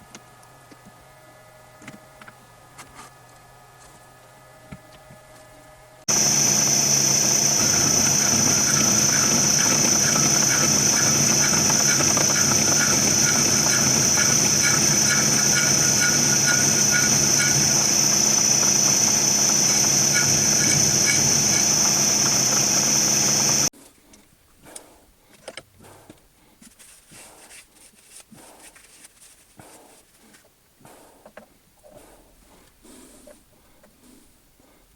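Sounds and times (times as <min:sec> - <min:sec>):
angle grinder on metal: 0:06.1 - 0:23.7.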